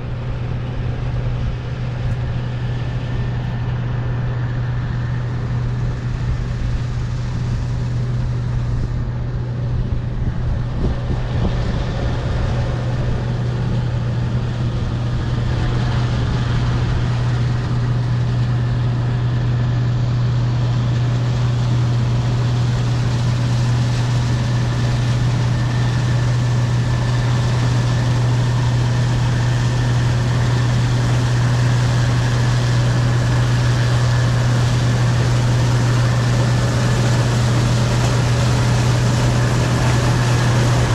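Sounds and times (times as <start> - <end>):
combine harvester engine drone: 0.0 - 40.9.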